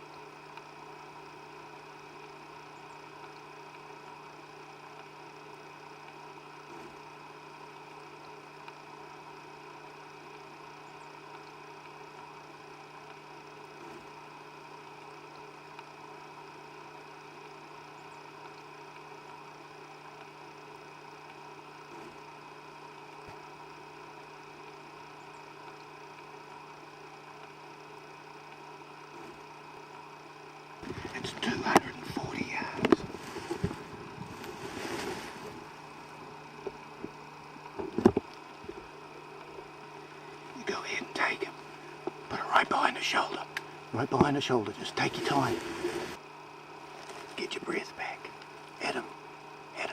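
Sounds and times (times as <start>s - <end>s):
faint electrical hum: 0.0s - 49.9s
faint rustling: 30.8s - 37.2s, 45.1s - 46.2s, 46.8s - 47.4s
low hiss: 38.3s - 46.2s.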